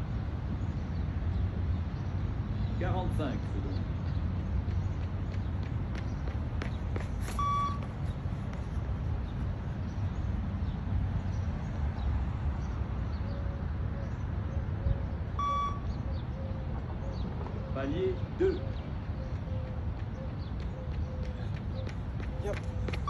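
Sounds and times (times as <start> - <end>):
short electronic beeps: 7.4 - 7.9, 15.4 - 15.9.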